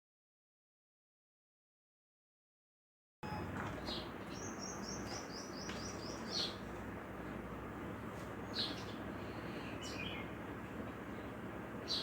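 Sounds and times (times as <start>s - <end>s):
birds chirping: 3.2s - 12.0s.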